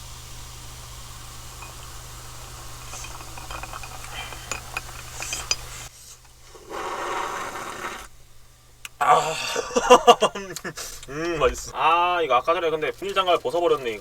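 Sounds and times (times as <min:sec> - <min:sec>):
utensils and dishes clinking: 0:00.0 - 0:06.4.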